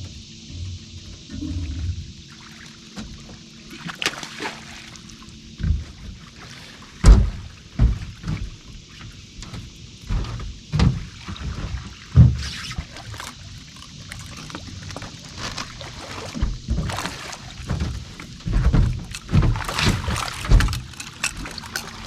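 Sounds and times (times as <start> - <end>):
water lapping: 1.2 - 9.4, 10.9 - 22.0
knocks against boat hull: 7.0 - 8.6.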